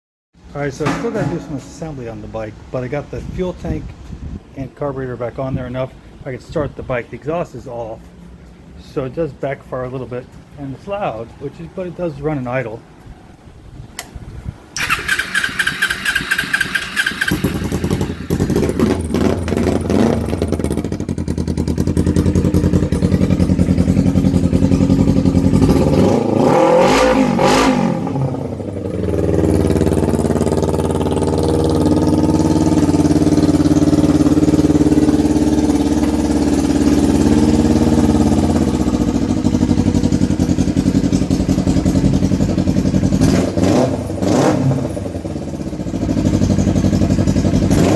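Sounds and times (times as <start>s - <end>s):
motorcycle engine running and idling: 0.8s - 1.7s, 14.8s - 26.3s, 28.2s - 47.9s
electric starter cranking: 14.8s - 19.2s.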